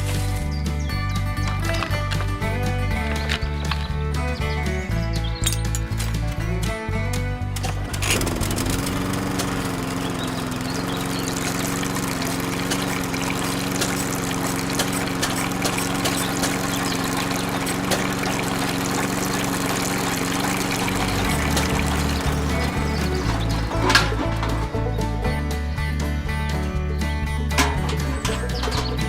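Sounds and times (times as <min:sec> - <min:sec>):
small electric motor humming: 0:07.7 - 0:24.9
liquid pouring and splashing: 0:11.2 - 0:24.1.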